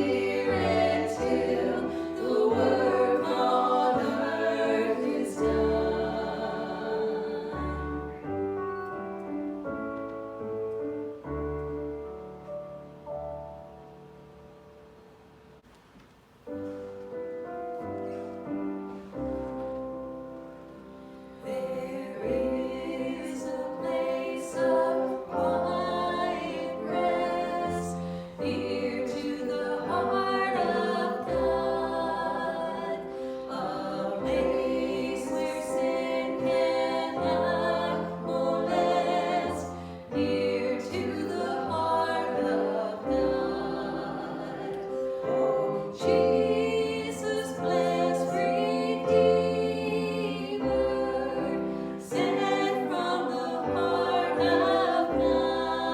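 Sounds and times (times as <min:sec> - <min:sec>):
group singing worship song: 0:00.0 - 0:08.9, 0:21.1 - 0:55.9.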